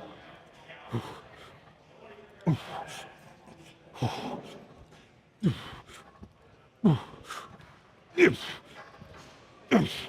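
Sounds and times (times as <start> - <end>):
man grunting: 2.5 - 2.8, 8.2 - 8.6, 9.7 - 10.0.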